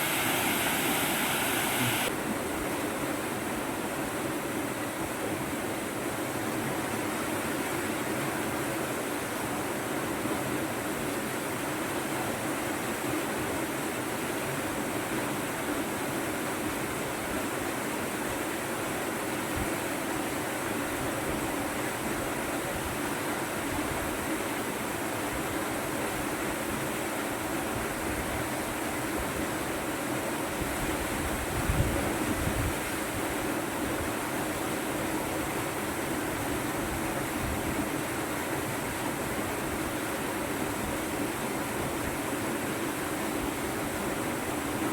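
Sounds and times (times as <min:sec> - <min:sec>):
waterfall rushing: 0:00.0 - 0:02.1.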